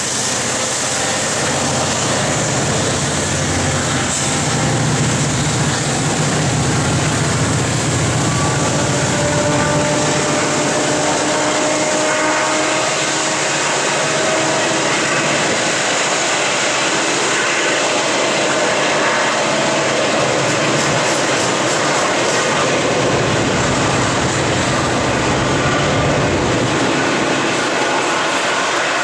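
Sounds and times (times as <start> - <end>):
freight train roar: 0.0 - 29.0
rising locomotive whine: 0.0 - 29.0
deep rumble: 22.8 - 27.0.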